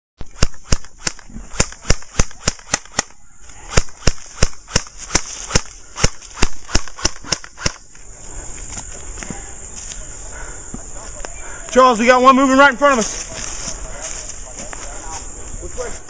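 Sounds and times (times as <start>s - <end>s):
airsoft gun shots: 0.2s - 7.9s.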